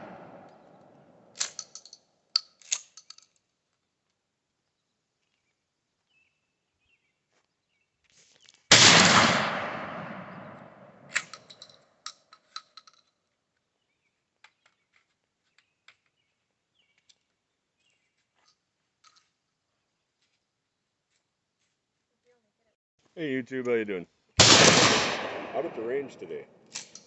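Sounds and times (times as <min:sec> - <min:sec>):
shotgun blast with echo: 0:00.0 - 0:00.5, 0:08.7 - 0:11.0, 0:24.4 - 0:26.2.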